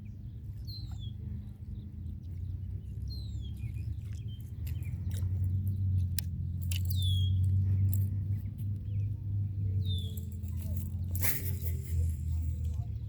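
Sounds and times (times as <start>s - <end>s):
birds chirping downward calls: 0.0s - 13.0s.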